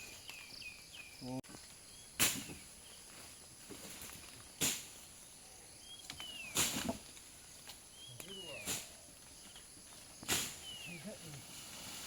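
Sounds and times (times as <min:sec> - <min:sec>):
bird chirps: 0:00.0 - 0:03.4, 0:05.0 - 0:11.3.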